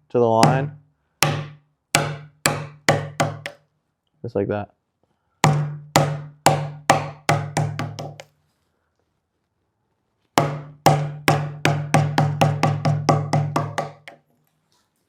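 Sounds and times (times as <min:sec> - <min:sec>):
mallet striking chisel: 0:00.4 - 0:03.6, 0:05.4 - 0:08.3, 0:10.4 - 0:14.2.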